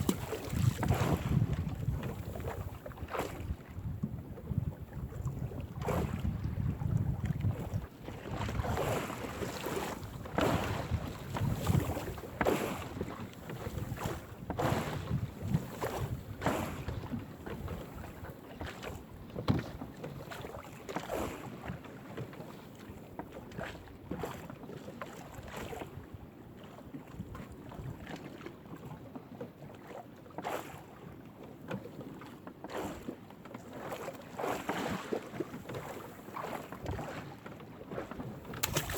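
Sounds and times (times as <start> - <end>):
knocks on boat: 0.0 - 2.5, 10.2 - 20.1
water splashes: 0.0 - 3.6, 38.0 - 38.9
wind buffeting microphone: 0.0 - 8.8, 10.2 - 12.2.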